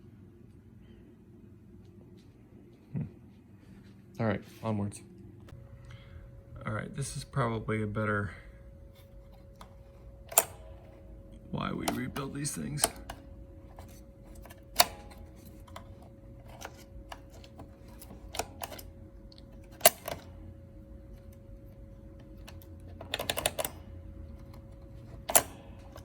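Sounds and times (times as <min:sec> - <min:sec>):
faint steady hum: 0:00.0 - 0:26.0
metallic mechanism clicks: 0:09.5 - 0:11.0, 0:11.8 - 0:20.4, 0:22.3 - 0:26.0.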